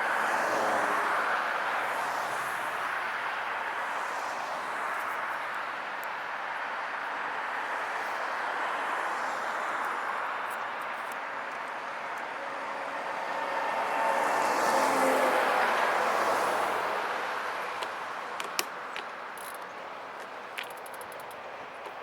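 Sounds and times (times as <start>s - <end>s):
rushing wind and road noise: 0.0s - 22.0s
motor vehicle passing by: 13.4s - 17.7s.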